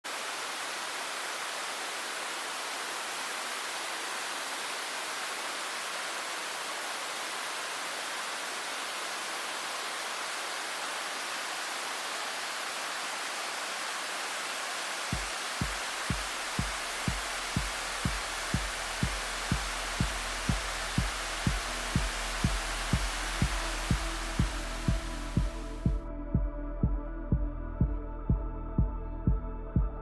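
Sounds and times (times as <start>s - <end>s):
waterfall roaring: 0.1s - 25.9s.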